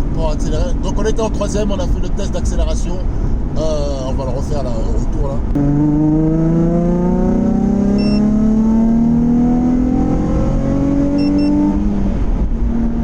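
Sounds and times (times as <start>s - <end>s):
car engine accelerating: 5.4s - 13.0s.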